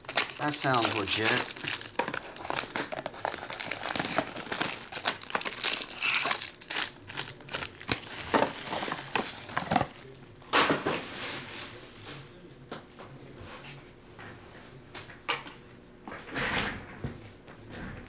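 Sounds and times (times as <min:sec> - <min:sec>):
plastic wrapping crinkling and tearing: 0:00.0 - 0:10.2.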